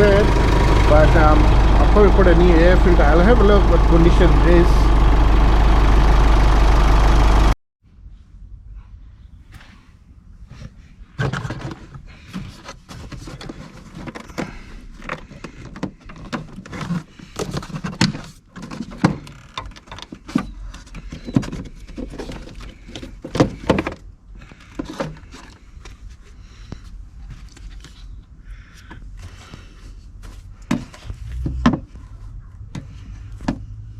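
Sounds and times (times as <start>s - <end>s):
low steady rumble: 0.0s - 9.4s.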